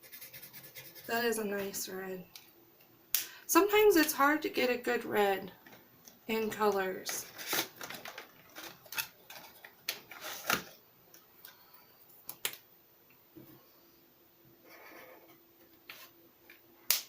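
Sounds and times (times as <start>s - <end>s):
marker scratching paper: 0.0s - 1.4s.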